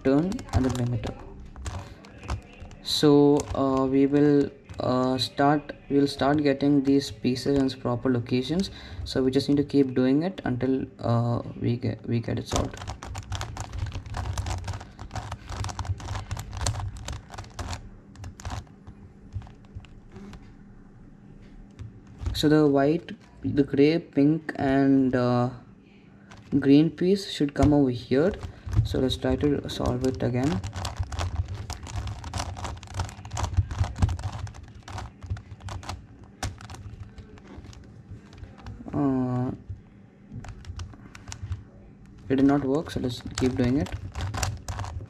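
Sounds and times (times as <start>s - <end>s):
plastic puzzle pieces clicking: 0.2s - 4.8s, 12.5s - 19.9s, 28.3s - 38.9s, 40.4s - 45.0s.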